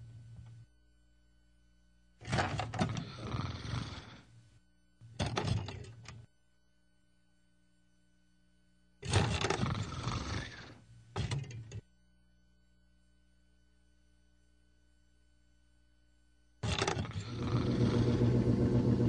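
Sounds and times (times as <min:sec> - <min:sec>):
man snoring loudly: 0:02.8 - 0:04.3, 0:09.1 - 0:10.8, 0:16.6 - 0:19.0.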